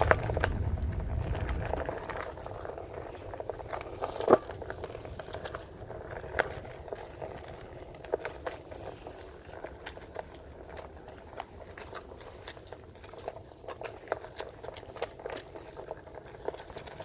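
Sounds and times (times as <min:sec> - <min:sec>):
low rumble: 0:00.0 - 0:03.9
tyre crackling on dirt: 0:00.0 - 0:17.0.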